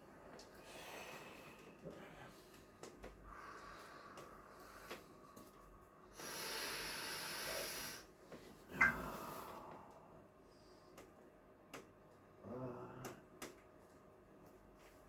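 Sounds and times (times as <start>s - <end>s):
person breathing heavily: 8.8s - 10.8s.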